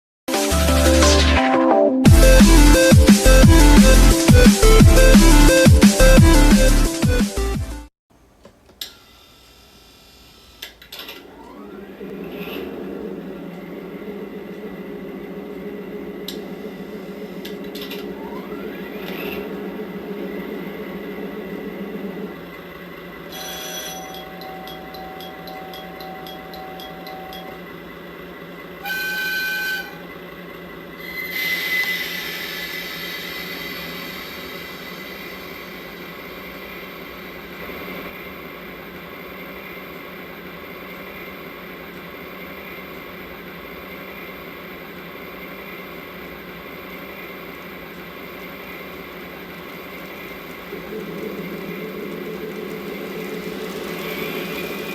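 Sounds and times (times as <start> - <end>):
steady tone: 11.3 - 27.9, 49.2 - 54.9
diesel locomotive engine drone: 11.3 - 54.9
diesel locomotive engine running: 47.3 - 54.9
high hiss: 48.4 - 54.9.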